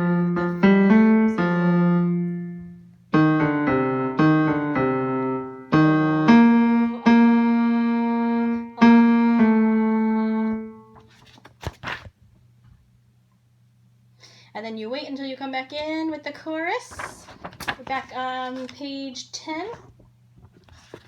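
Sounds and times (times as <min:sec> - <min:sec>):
piano chords: 0:00.0 - 0:11.0.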